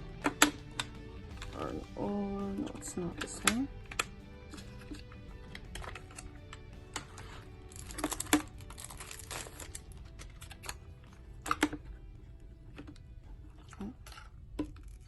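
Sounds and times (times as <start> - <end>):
packaging rustling: 4.6 - 15.0.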